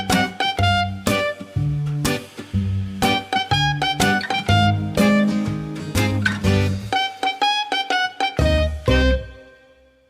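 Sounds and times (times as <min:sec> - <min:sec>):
plucked string instrument notes: 0:00.0 - 0:10.0
low bass notes: 0:00.6 - 0:06.9.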